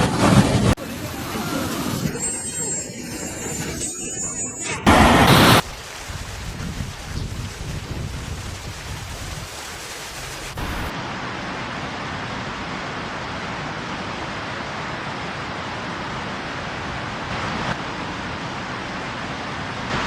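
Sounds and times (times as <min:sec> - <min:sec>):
rushing floodwater: 0:04.9 - 0:20.0.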